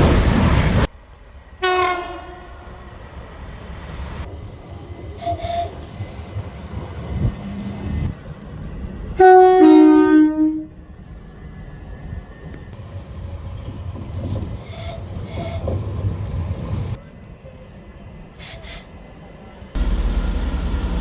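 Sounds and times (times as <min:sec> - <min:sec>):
low rumble of train: 0:00.0 - 0:21.0
train horn two-tone blast: 0:01.6 - 0:02.7, 0:09.2 - 0:10.8.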